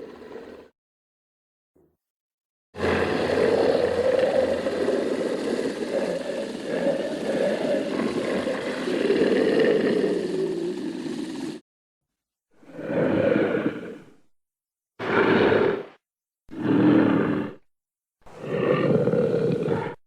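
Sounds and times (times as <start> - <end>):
monster roar: 2.8 - 11.6, 18.3 - 20.0.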